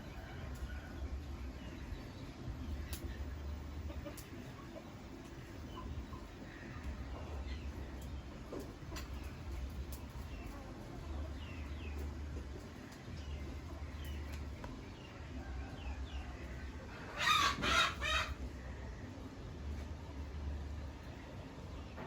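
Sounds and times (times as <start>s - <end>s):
loud pitched animal calls: 16.9s - 18.4s.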